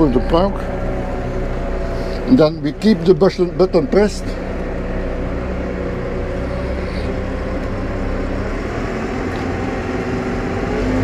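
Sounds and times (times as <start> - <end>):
tractor diesel engine under load: 0.0 - 11.0.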